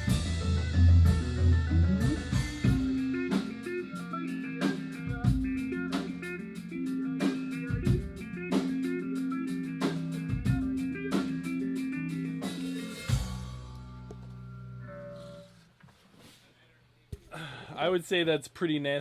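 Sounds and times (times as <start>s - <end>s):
drum kit steady beat: 0.0s - 14.1s
distorted electric guitar riff: 0.0s - 15.6s.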